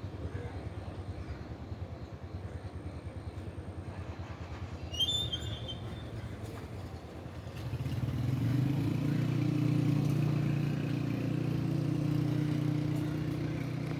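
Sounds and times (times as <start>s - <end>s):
engine humming: 7.4s - 13.9s.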